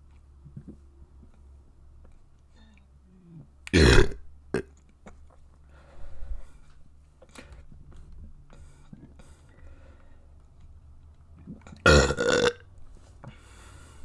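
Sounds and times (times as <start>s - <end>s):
person burping: 3.7s - 4.7s, 11.8s - 12.7s.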